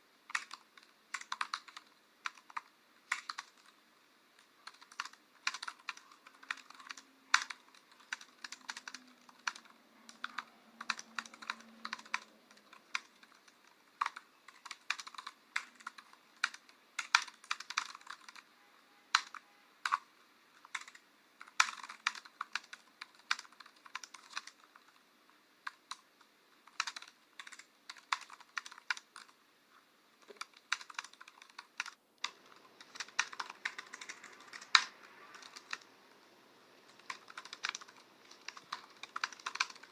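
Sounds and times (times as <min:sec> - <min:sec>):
typing on computer keyboard: 0:00.3 - 0:03.8, 0:04.4 - 0:18.5, 0:19.1 - 0:25.0, 0:25.6 - 0:29.4, 0:30.2 - 0:35.9, 0:36.8 - 0:39.9.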